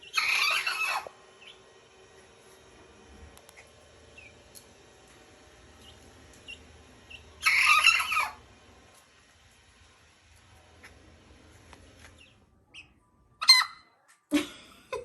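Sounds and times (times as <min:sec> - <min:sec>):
young rooster crowing: 0:00.2 - 0:01.1, 0:07.4 - 0:08.4.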